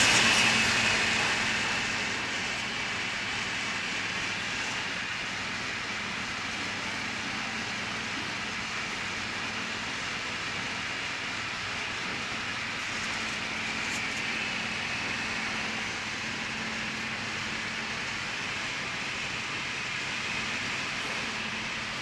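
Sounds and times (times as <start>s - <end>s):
torch flame hissing: 0.0s - 5.8s.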